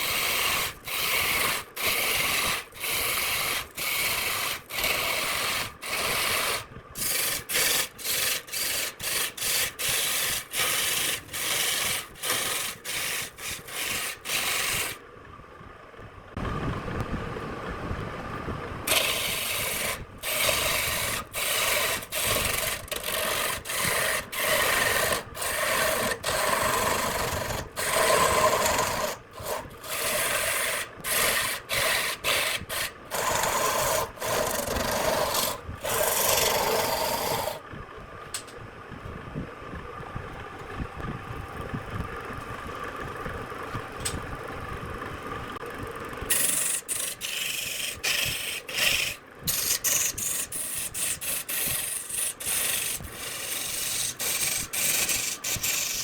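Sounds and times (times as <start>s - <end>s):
sanding wood: 0.0s - 15.0s, 18.9s - 37.6s, 46.3s - 56.0s.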